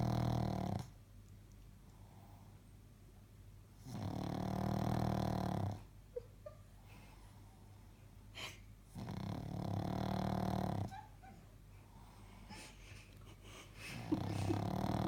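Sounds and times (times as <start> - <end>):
dog snoring: 0.0 - 1.0, 3.8 - 5.9, 8.9 - 11.0, 14.0 - 15.0.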